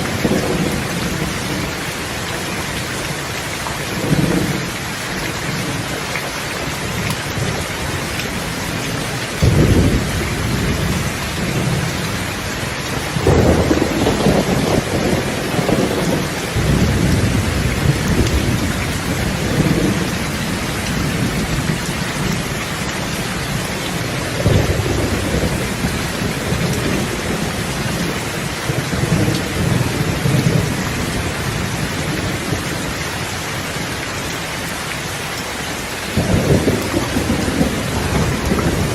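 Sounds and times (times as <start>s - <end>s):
rolling thunder: 0.0s - 1.8s, 8.3s - 33.0s, 36.1s - 38.9s
steady rain hiss: 0.0s - 38.9s.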